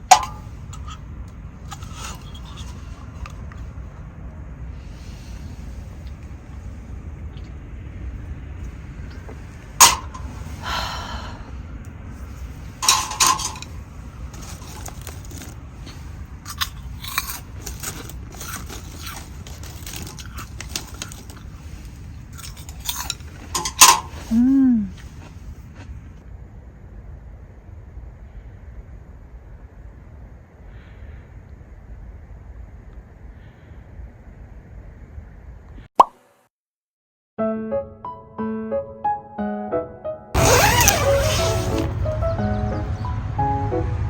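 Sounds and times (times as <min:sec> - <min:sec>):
spoon scraping iron pan: 0:00.0 - 0:01.0, 0:12.8 - 0:21.4, 0:22.4 - 0:24.3
low steady rumble: 0:00.0 - 0:35.8
chewing: 0:14.2 - 0:23.5.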